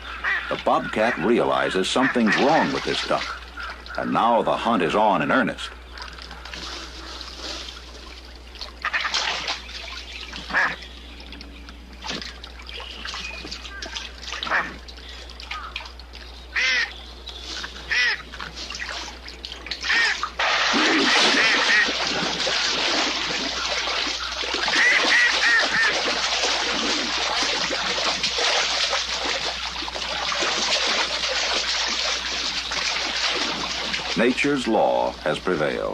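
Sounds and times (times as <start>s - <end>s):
mallard duck quacking: 0.0s - 1.2s, 2.0s - 4.2s, 10.4s - 10.8s, 14.4s - 14.8s, 16.5s - 16.9s, 17.9s - 18.2s, 19.8s - 20.2s, 24.7s - 26.0s
water splashing: 0.0s - 35.9s.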